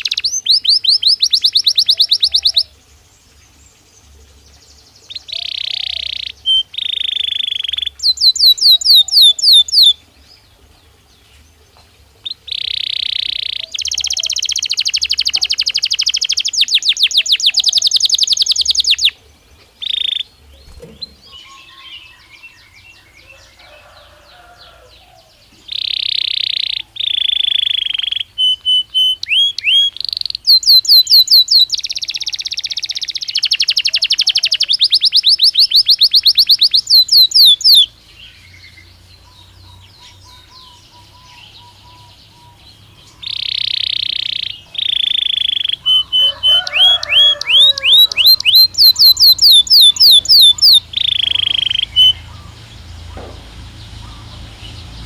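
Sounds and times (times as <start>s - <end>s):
canary singing trills: 0.0s - 55.0s.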